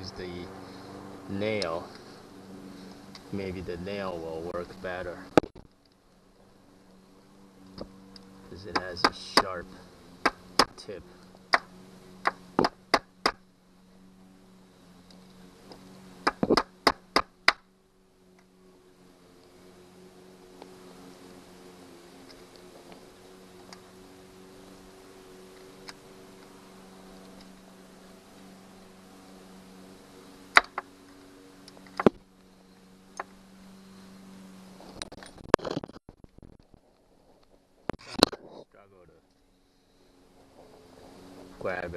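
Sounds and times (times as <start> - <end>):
low hum: 0.0 - 41.9.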